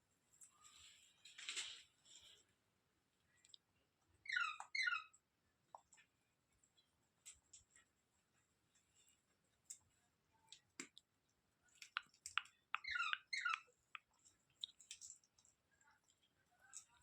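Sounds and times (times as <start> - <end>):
parrot squeaky chirps: 4.2 - 5.1, 12.8 - 13.7.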